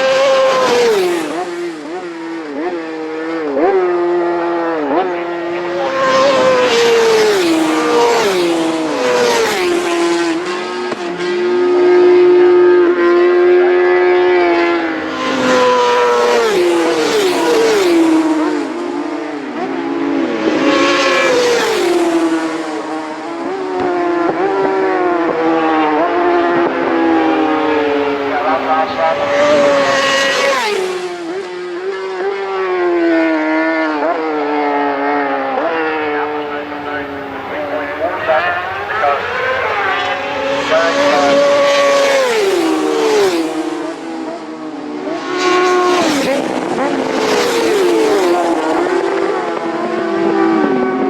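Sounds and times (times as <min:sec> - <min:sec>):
racing motorcycles passing at full throttle: 0:00.0 - 0:51.0.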